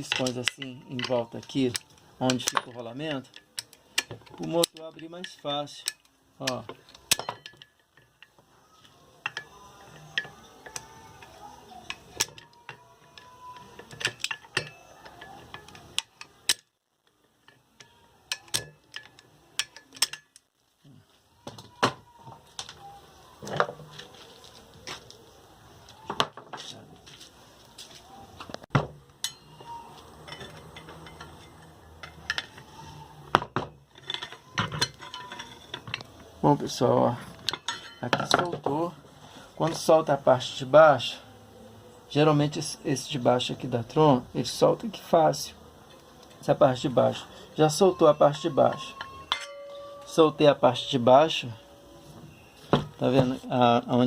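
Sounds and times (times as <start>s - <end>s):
pliers clicking on metal: 0.0s - 8.4s, 17.4s - 20.5s.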